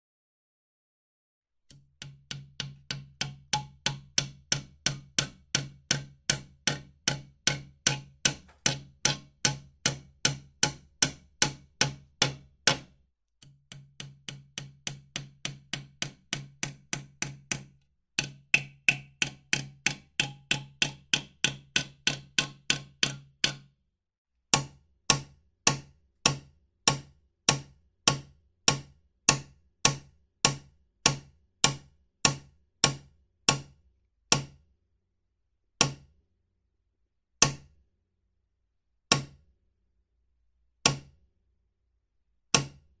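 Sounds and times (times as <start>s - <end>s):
hammer striking nails: 1.7s - 23.7s, 24.6s - 34.6s, 35.8s - 36.1s, 37.4s - 37.7s, 39.1s - 39.4s, 40.8s - 41.2s, 42.6s - 42.9s.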